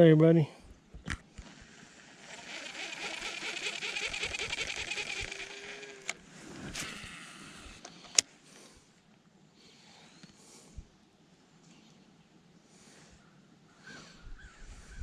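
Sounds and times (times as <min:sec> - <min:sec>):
fishing reel rattling: 0:01.4 - 0:08.2
sharp clicks: 0:02.3 - 0:08.3.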